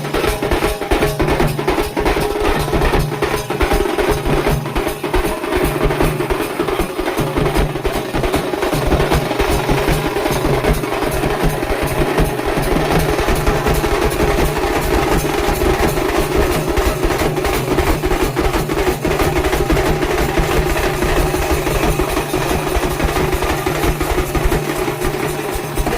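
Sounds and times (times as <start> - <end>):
fast percussion drumming: 0.0 - 25.9.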